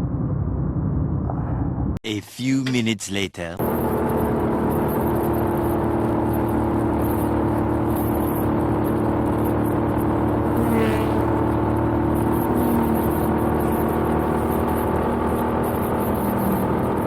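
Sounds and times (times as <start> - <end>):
road noise: 0.0 - 17.0
motorcycle engine cruising: 3.6 - 17.0.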